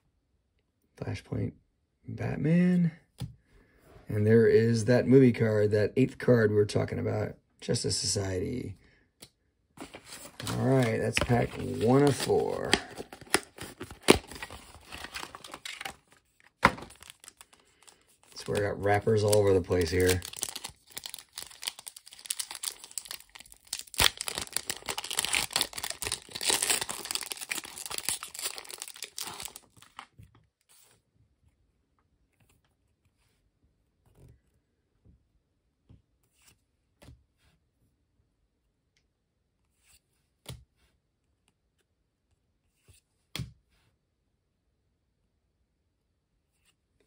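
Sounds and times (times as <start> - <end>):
foil wrapper crinkling and tearing: 10.2 - 30.1
cards tapping and clicking: 10.4 - 16.0.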